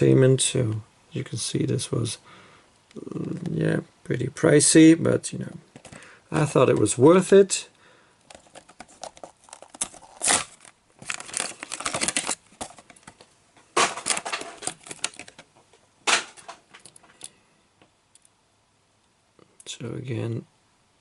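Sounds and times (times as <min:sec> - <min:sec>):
plastic and cardboard packaging tearing: 0:08.4 - 0:13.1, 0:13.8 - 0:15.4.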